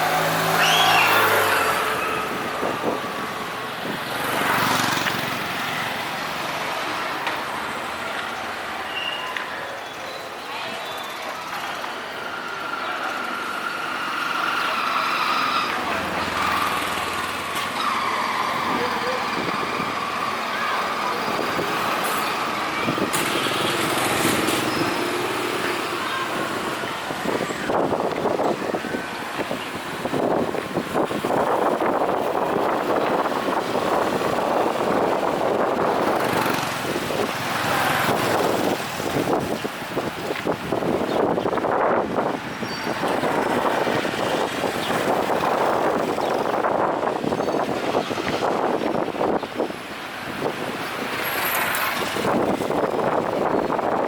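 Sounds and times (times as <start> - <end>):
engine passing close by: 0.0 - 6.9, 12.3 - 28.0, 30.0 - 39.6
people's voices: 0.0 - 39.4
street traffic: 0.0 - 54.0.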